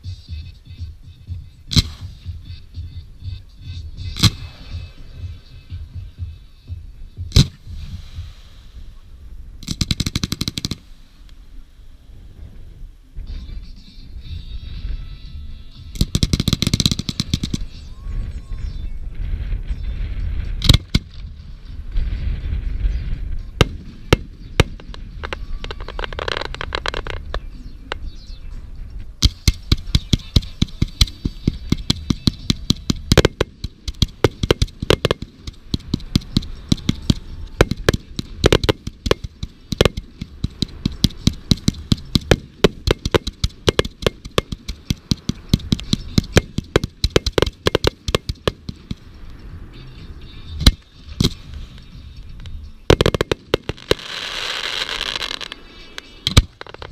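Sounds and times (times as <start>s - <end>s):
sharp firework bangs: 0.0s - 2.9s, 3.8s - 8.9s, 9.6s - 11.5s, 16.0s - 17.9s, 19.1s - 28.1s, 29.2s - 49.3s, 50.5s - 52.1s, 52.9s - 56.9s
low rumbling booms: 0.0s - 49.7s
firework crackling: 0.0s - 56.9s
rapid barrage of cracks: 23.6s - 27.4s, 29.2s - 49.1s.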